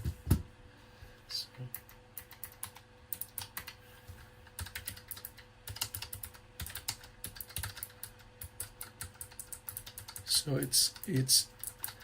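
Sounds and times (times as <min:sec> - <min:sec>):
mechanical keyboard typing: 0:01.7 - 0:03.8, 0:04.5 - 0:12.0.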